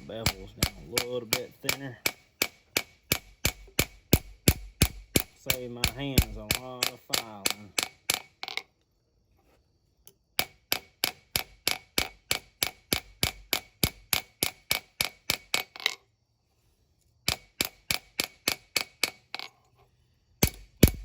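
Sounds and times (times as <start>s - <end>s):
hammer striking steel on anvil: 0.0s - 8.3s, 10.4s - 15.5s, 17.3s - 19.2s.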